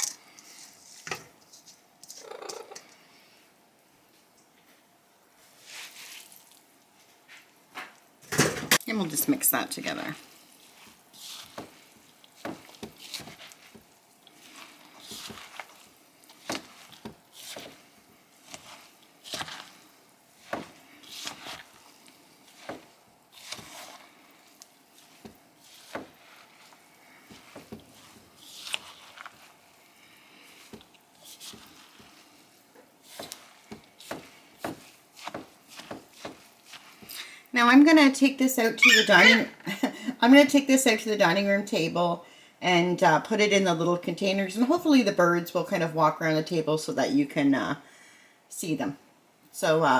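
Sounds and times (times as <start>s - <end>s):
soft squishing of food: 0.0s - 8.2s, 8.9s - 39.6s.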